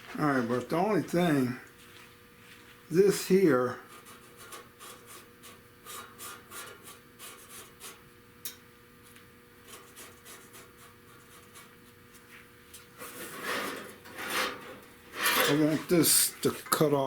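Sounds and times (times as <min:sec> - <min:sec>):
scratchy marking on sheet metal: 0:03.9 - 0:08.0, 0:09.6 - 0:11.8, 0:13.0 - 0:15.8.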